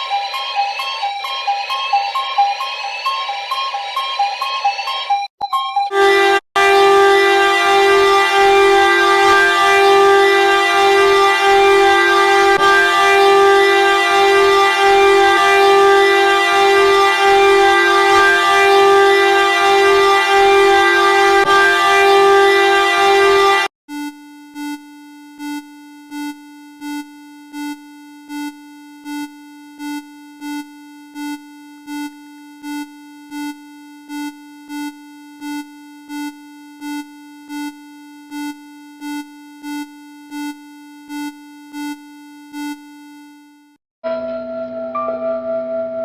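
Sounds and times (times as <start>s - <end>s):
buzzy electronic alert tone: 5.9s - 23.7s.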